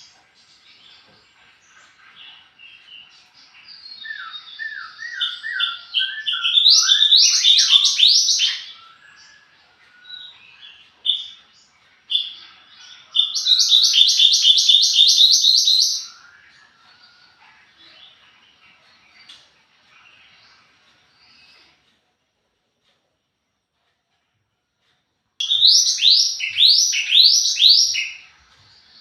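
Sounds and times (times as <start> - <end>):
songbird singing whistled phrases: 2.7 - 11.5, 12.1 - 18.2, 25.4 - 29.0.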